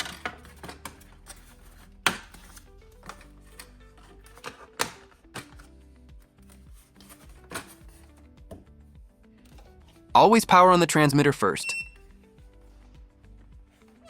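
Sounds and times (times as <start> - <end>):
background music with held tones: 0.0 - 14.0.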